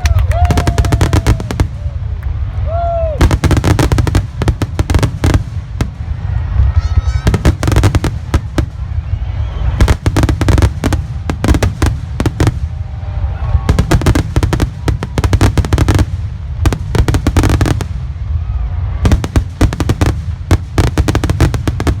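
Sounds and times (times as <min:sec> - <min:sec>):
fireworks bangs and crackles: 0:00.0 - 0:22.0
heavy low rumble: 0:00.0 - 0:22.0.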